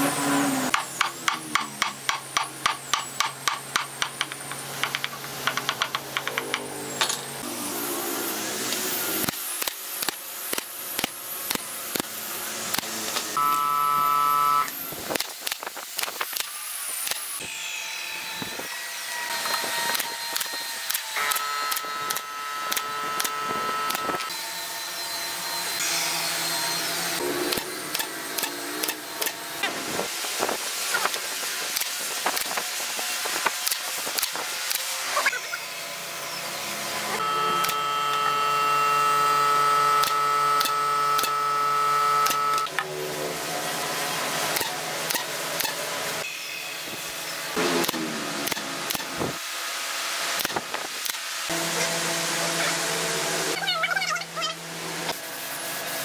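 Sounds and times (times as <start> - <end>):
sharp knocks and taps: 0.7 - 6.7
power tool motor whining: 3.7 - 49.4.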